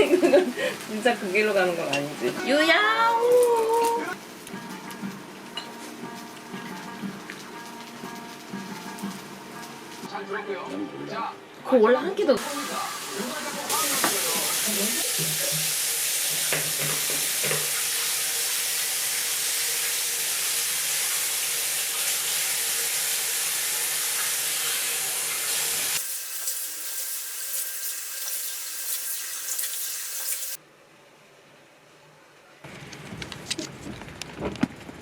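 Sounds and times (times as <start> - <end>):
tap water running into sink: 13.6 - 30.6.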